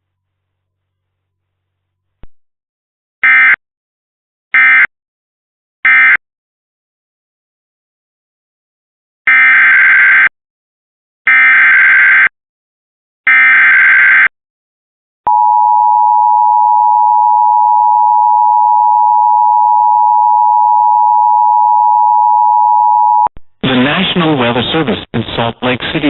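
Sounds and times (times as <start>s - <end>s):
two-tone attention signal: 15.3s - 23.3s.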